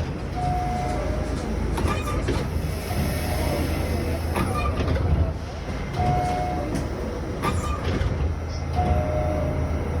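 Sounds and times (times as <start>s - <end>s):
low rumble of train: 0.0s - 10.0s
subway door chime: 0.0s - 10.0s.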